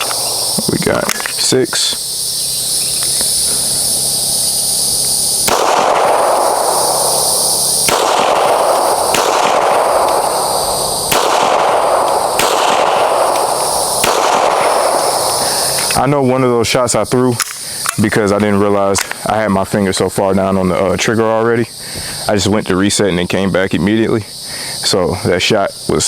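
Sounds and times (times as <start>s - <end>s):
high buzz of insects: 0.0s - 26.0s
gunshots: 5.4s - 15.8s.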